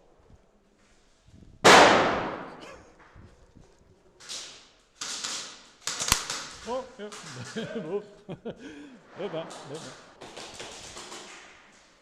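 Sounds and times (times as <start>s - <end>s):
loud reverberant bang: 1.6s - 2.7s.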